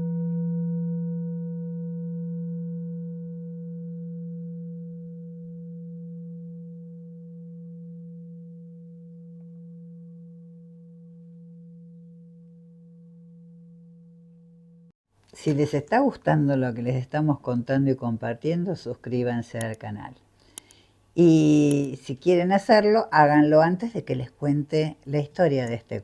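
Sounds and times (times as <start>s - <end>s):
singing bowl ringing: 0.0s - 14.8s.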